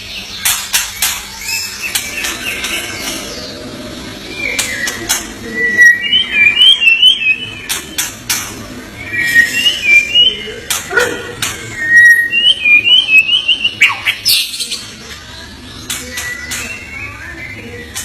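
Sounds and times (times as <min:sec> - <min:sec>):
bird singing whistled notes: 0:04.3 - 0:08.0, 0:09.0 - 0:10.6, 0:11.7 - 0:14.7, 0:16.1 - 0:17.6.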